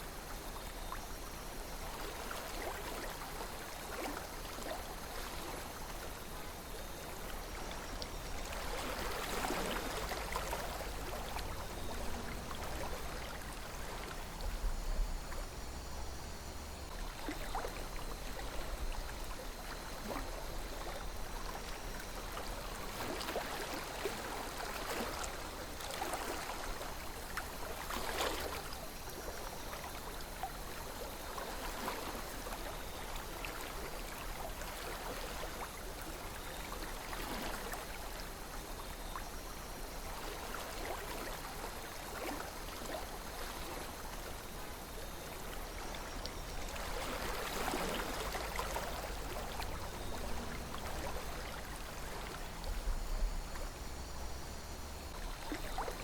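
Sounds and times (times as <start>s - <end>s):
river flowing: 0.0s - 14.6s, 39.6s - 56.0s
water gurgling and splashing: 40.0s - 56.0s.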